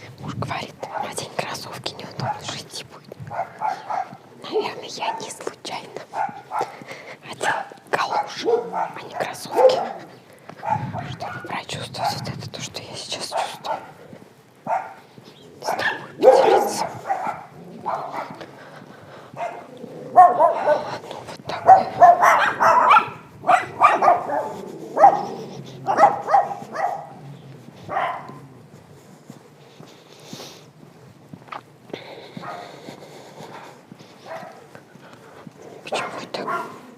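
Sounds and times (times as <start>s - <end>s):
dogs barking: 0.8s - 12.4s, 13.0s - 28.7s, 32.2s - 36.9s.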